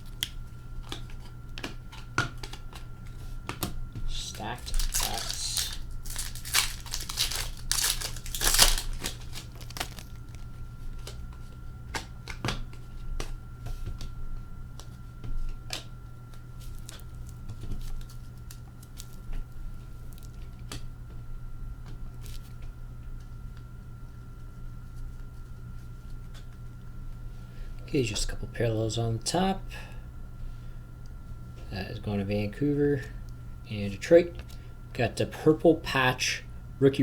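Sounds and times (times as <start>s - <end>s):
cards tapping and clicking: 0.1s - 11.2s
wrappers tearing and crinkling: 4.1s - 10.6s.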